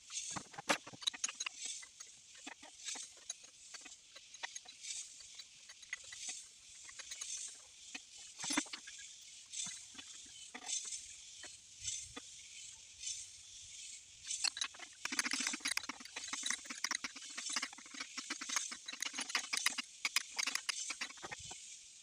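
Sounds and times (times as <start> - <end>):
ratchet and wrench clicking: 0.6 - 9.0, 14.3 - 21.5.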